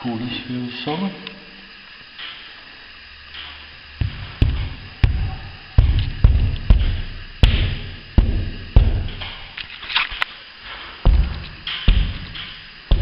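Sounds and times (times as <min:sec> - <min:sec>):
hand knocking on plaster ceiling: 0:04.0 - 0:09.1, 0:11.0 - 0:12.3.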